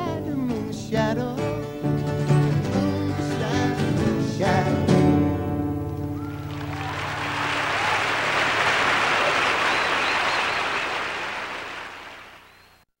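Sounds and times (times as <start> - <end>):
faint whistles: 6.2 - 8.0, 8.9 - 11.6, 12.3 - 12.9
applause: 6.2 - 12.8.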